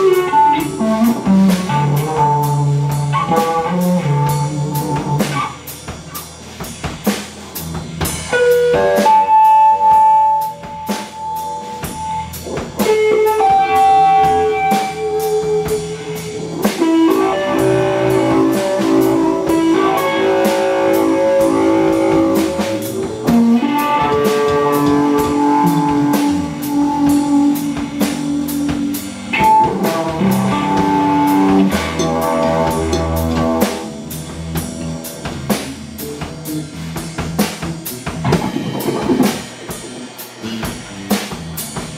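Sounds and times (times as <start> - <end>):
drum kit playing: 0.0 - 41.9
electric guitar sustained lead notes: 12.9 - 33.6, 38.1 - 40.0.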